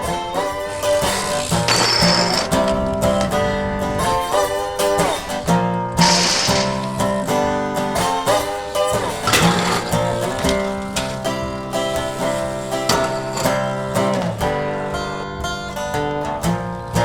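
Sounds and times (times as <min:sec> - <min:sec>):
guitar background music: 0:00.0 - 0:17.0.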